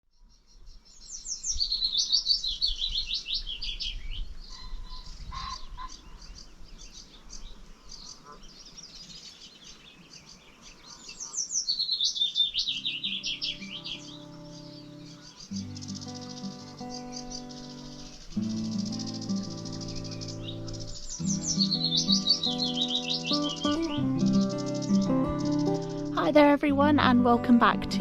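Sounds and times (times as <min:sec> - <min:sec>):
faint bird chirps: 0:00.0 - 0:26.2
songbird singing: 0:00.0 - 0:28.0.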